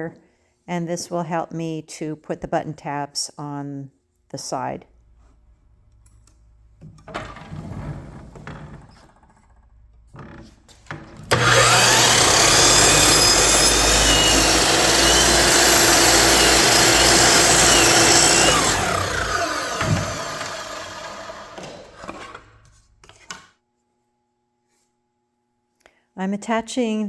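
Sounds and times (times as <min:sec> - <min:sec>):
power tool cutting wood: 0:11.3 - 0:22.4.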